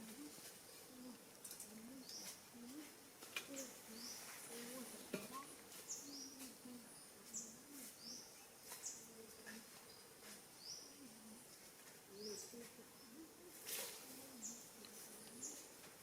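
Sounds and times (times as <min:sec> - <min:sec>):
low wavering bird calls: 0:00.0 - 0:09.8.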